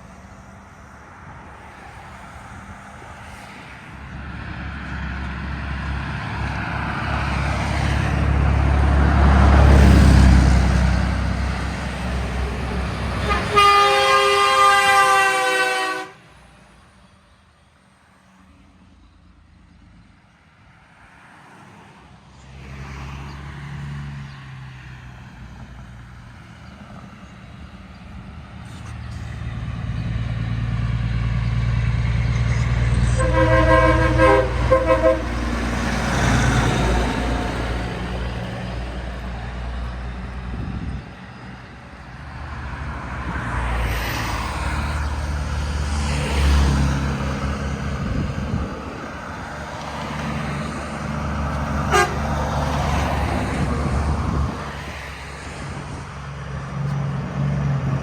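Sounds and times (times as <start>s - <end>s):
diesel locomotive rumble: 0.0s - 17.4s, 24.4s - 58.0s
multi-note air horn blast: 13.2s - 16.2s, 33.0s - 35.7s, 51.9s - 52.3s.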